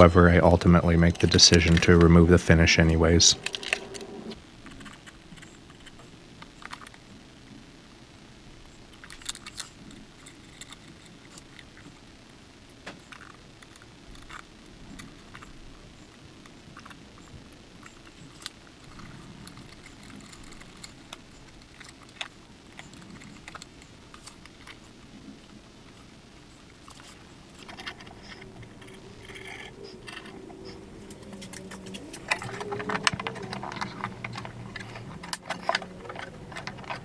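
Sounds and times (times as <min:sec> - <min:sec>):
low background hum: 0:00.0 - 0:37.0.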